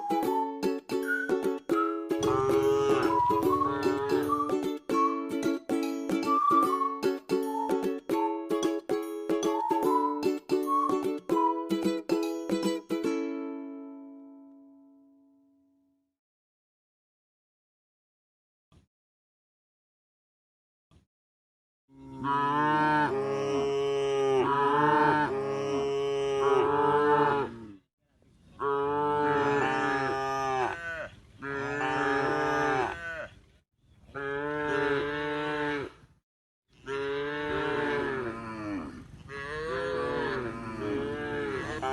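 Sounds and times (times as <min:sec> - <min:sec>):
cow mooing: 0:02.2 - 0:04.2, 0:21.9 - 0:27.8, 0:28.6 - 0:33.3, 0:34.2 - 0:36.0, 0:36.9 - 0:41.9.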